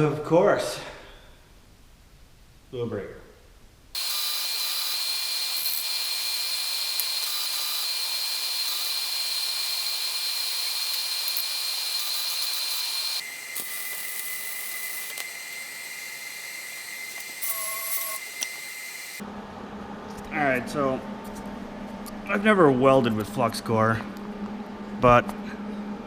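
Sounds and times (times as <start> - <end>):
welding arc sputtering hiss: 4.0 - 19.2.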